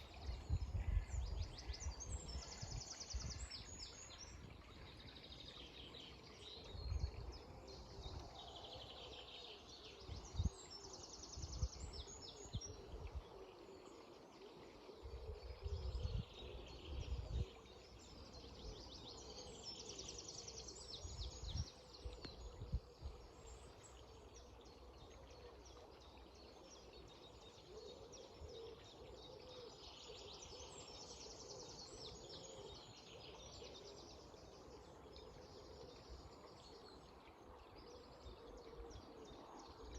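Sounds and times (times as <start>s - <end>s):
wind buffeting microphone: 0.0s - 3.6s, 15.6s - 17.5s
songbirds singing: 0.0s - 39.9s.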